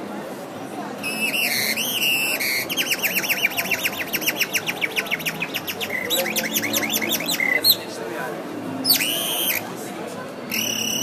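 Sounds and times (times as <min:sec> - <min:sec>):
whistled bird-like calls: 0:01.0 - 0:07.8, 0:08.8 - 0:09.6, 0:10.5 - 0:11.0.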